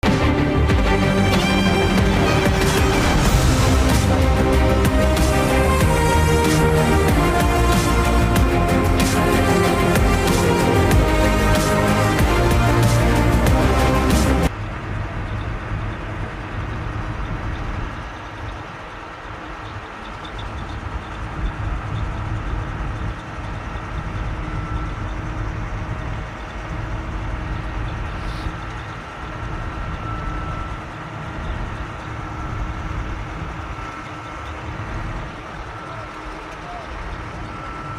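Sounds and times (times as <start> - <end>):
heavy machinery rumbling: 0.0 - 37.9
faint steady whine: 14.5 - 37.9.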